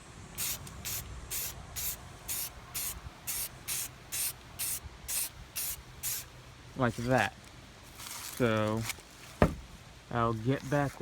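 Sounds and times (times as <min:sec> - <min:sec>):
spray paint can bursts: 0:00.4 - 0:06.3.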